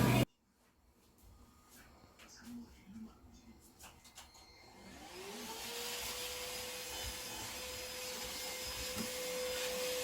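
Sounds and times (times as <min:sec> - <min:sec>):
electric motor humming: 0:04.8 - 0:10.0.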